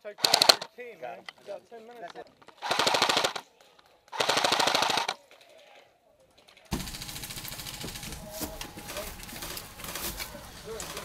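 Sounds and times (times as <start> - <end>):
airsoft rifle firing bursts: 0.0 - 0.7, 2.6 - 3.4, 4.1 - 5.2, 6.7 - 8.2.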